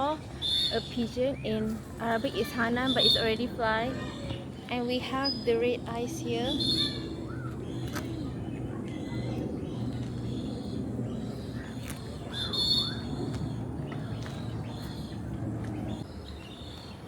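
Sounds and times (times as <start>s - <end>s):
murmur of people's voices: 0.0s - 13.2s
birds calling and chirping: 0.0s - 17.0s.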